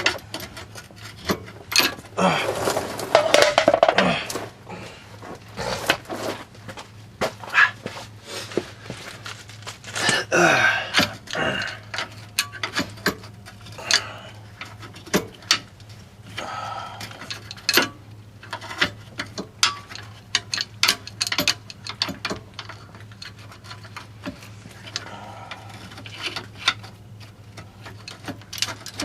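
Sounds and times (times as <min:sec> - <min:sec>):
metal tools clicking and scraping: 0:00.0 - 0:04.4, 0:10.9 - 0:29.0
steady low hum: 0:00.0 - 0:29.0.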